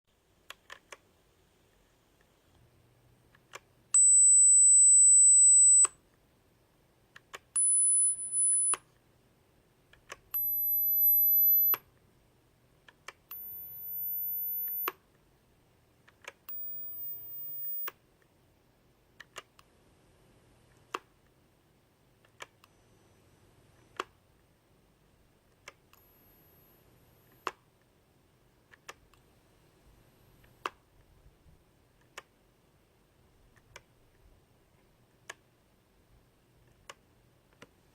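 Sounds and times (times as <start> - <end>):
high-pitched test tones: 7.6 - 8.8, 10.4 - 11.8, 13.3 - 14.9, 16.5 - 17.9.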